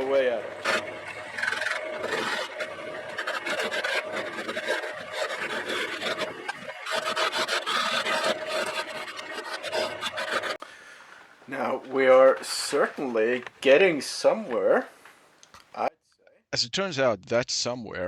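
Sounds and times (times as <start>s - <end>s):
lathe motor hum: 0.0s - 10.6s
tool scraping spinning wood: 0.0s - 10.6s, 11.6s - 14.8s.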